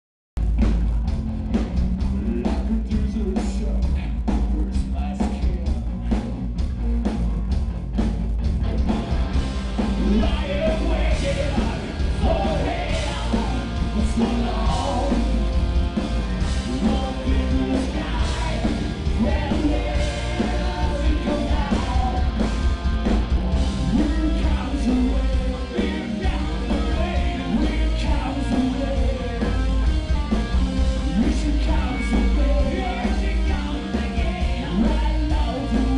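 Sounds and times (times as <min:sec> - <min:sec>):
rock band playing live: 0:00.4 - 0:35.9
person singing: 0:16.6 - 0:22.3.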